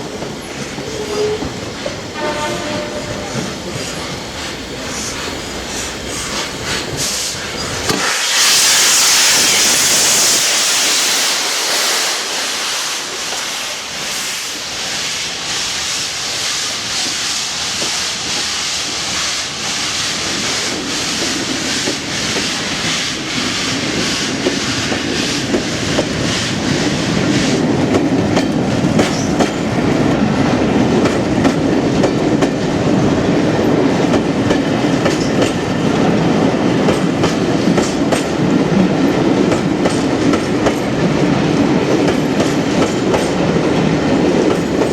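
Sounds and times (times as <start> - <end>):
train rumble: 0.0 - 44.9
train wheels clickety-clack: 0.0 - 44.9
loud hiss: 3.6 - 27.7.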